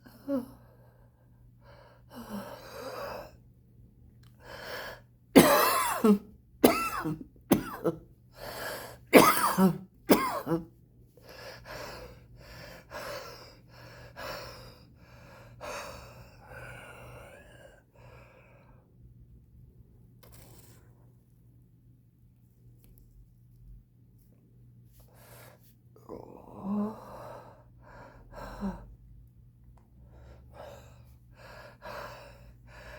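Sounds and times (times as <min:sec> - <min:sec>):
person coughing hard: 0:05.4 - 0:08.0, 0:09.1 - 0:10.7
wheezy breaths: 0:08.3 - 0:09.1, 0:30.0 - 0:32.9.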